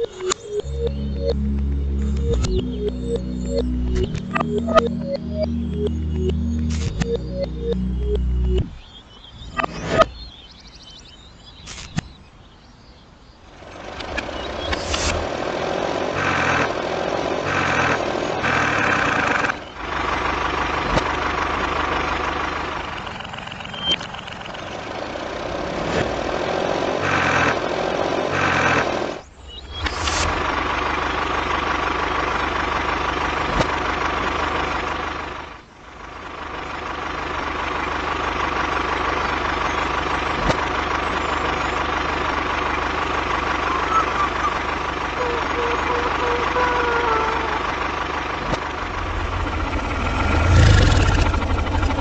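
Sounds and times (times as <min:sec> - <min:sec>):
engine idling: 0:00.0 - 0:08.8, 0:13.6 - 0:52.0.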